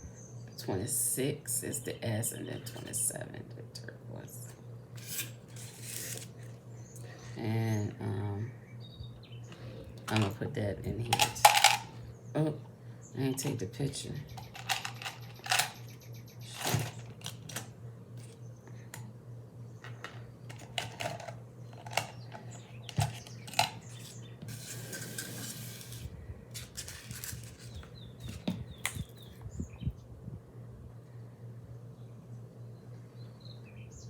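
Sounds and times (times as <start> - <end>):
small metal pieces clicking: 14.4 - 15.8.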